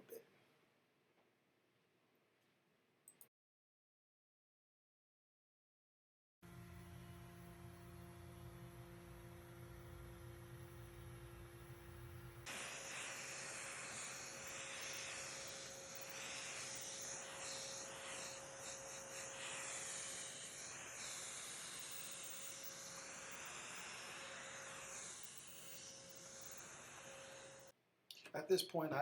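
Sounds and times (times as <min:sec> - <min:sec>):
power tool cutting wood: 0:12.5 - 0:27.7.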